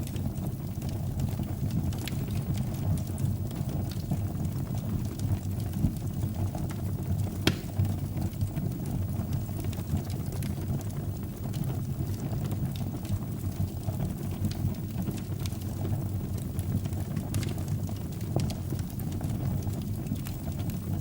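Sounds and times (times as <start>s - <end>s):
wood fire crackling in fireplace: 0.0s - 21.0s.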